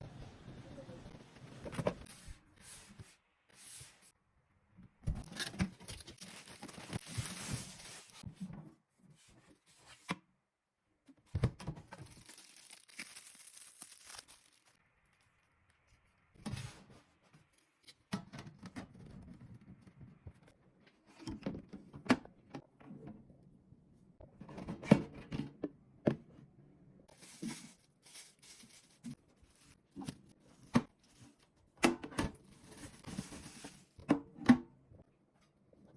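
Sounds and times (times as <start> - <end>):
packaging rustling and tearing: 5.2 - 8.2, 12.0 - 14.8.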